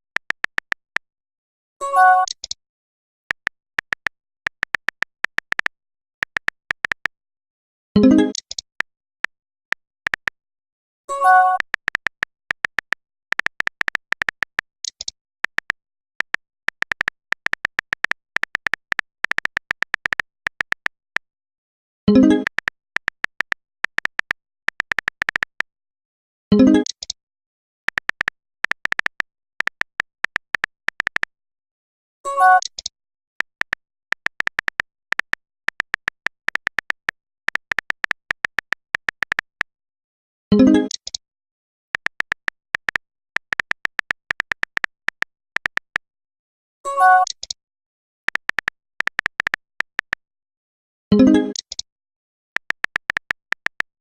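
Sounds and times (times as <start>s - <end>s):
phone keyboard typing clicks: 0.0s - 1.0s, 2.0s - 2.6s, 3.3s - 7.2s, 8.0s - 10.4s, 11.1s - 21.3s, 22.1s - 25.7s, 26.6s - 27.2s, 27.9s - 31.3s, 32.3s - 39.7s, 40.6s - 41.2s, 41.9s - 46.1s, 47.1s - 47.6s, 48.3s - 50.2s, 51.2s - 51.8s, 52.6s - 54.0s.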